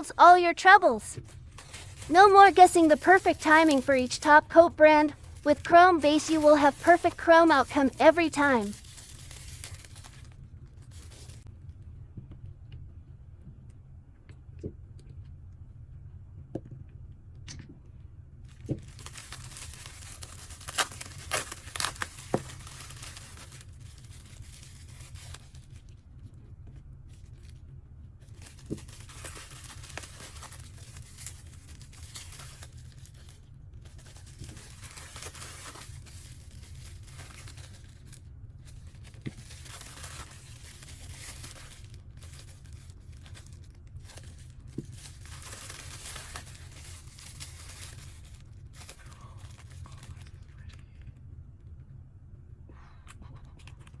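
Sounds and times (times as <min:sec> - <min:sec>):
low steady hum: 0:00.0 - 0:54.0
packaging crinkling and tearing: 0:01.2 - 0:04.4, 0:05.1 - 0:11.4, 0:18.6 - 0:25.9, 0:28.2 - 0:50.7.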